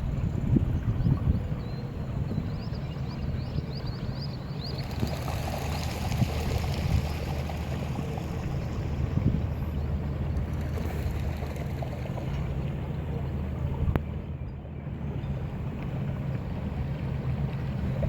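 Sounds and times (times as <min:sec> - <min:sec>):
wind on microphone: 0:00.0 - 0:12.2
water rushing along boat hull: 0:00.0 - 0:18.0.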